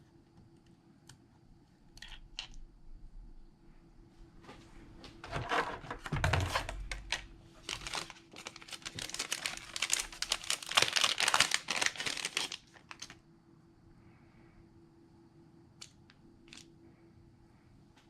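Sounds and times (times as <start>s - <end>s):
thin plastic crinkling: 6.2s - 13.2s.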